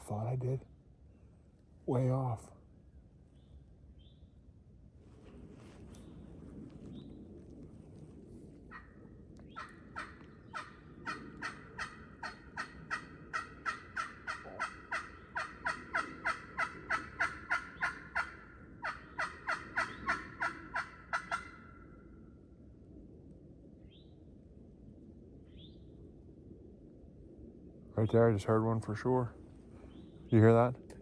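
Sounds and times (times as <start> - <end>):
turkey yelps: 8.7 - 8.9, 9.5 - 21.9.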